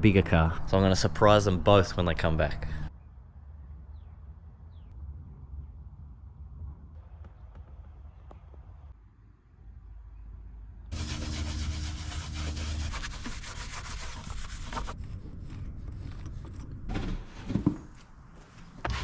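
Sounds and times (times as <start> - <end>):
rubbing and knocking: 10.9 - 18.0.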